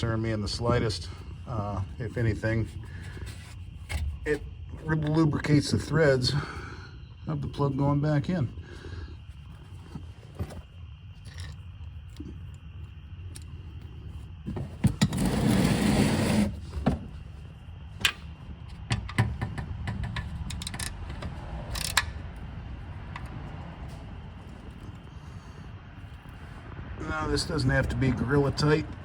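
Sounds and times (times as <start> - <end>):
metallic clicks and taps of tools: 18.9 - 22.1.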